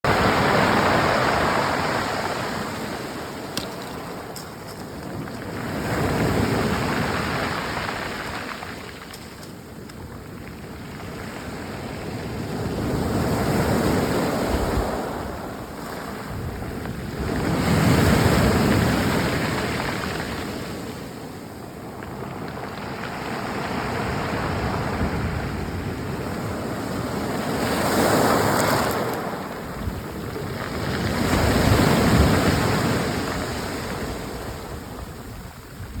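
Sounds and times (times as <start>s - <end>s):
waves washing over rocky beach: 0.1s - 36.0s
stones rattling: 2.4s - 11.4s.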